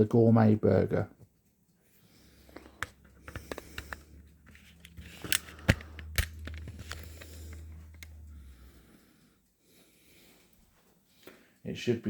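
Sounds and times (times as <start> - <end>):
low steady hum: 1.8 - 10.3
sharp clicks and knocks: 2.5 - 8.5.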